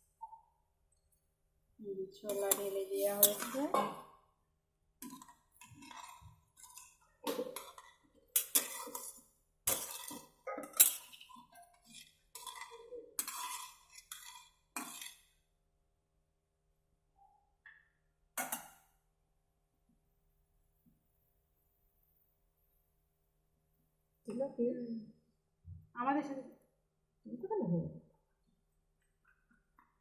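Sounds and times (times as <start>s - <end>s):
metal pots clinking: 2.2s - 4.2s, 5.0s - 15.2s.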